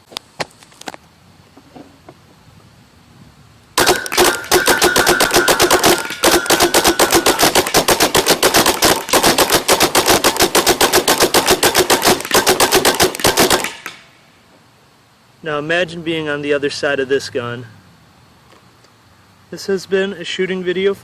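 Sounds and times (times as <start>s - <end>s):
paintball gun rapid fire: 3.8s - 14.0s.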